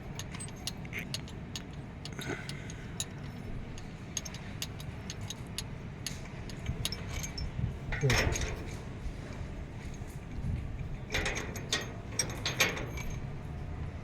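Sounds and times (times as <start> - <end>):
metallic clicks of hand tools: 0.0 - 8.8, 11.1 - 13.2.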